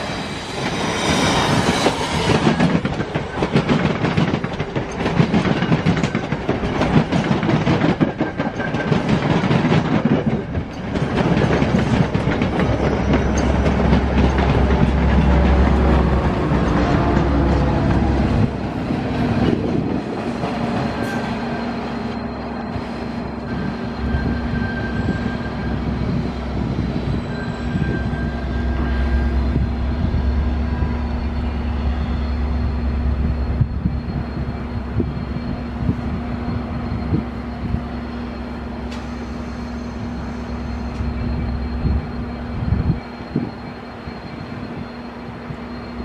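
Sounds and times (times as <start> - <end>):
train rolling drone: 0.0 - 46.0
faint high squeals: 19.2 - 46.0.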